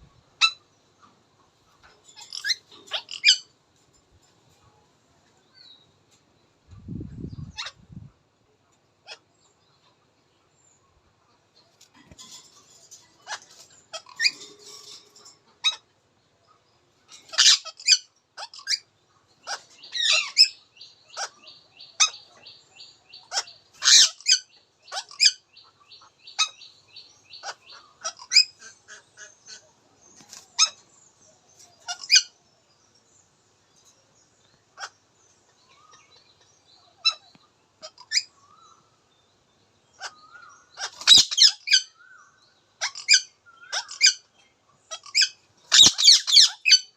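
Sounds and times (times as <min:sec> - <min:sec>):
parakeet calling: 0:02.2 - 0:03.5, 0:12.0 - 0:15.8, 0:17.2 - 0:18.8, 0:19.4 - 0:22.4, 0:23.2 - 0:25.5, 0:40.0 - 0:42.1, 0:42.8 - 0:44.3, 0:44.9 - 0:46.9
parakeet chattering: 0:17.2 - 0:18.8, 0:40.8 - 0:41.9, 0:44.9 - 0:46.9.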